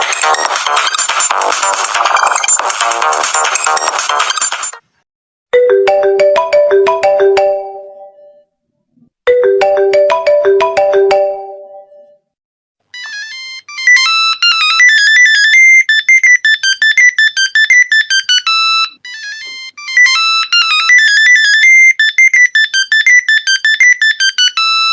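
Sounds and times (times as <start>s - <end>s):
high-pitched electronic ringtone: 5.6s - 8.3s, 9.3s - 12.1s, 13.0s - 24.9s
mellow phone ringtone: 5.6s - 8.4s, 9.3s - 12.2s, 13.0s - 24.9s.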